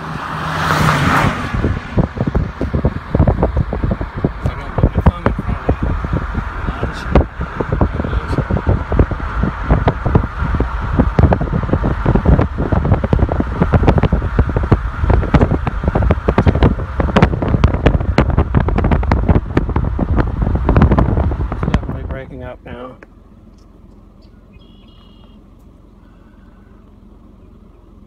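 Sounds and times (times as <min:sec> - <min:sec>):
wind buffeting microphone: 0:01.0 - 0:22.6.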